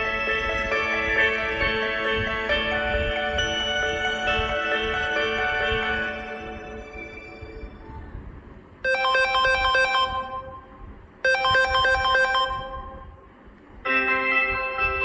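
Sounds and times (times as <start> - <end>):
phone ringtone: 0.0 - 7.7, 8.8 - 13.0
bright chiming ringtone: 0.0 - 7.8, 8.8 - 10.6, 11.3 - 13.0.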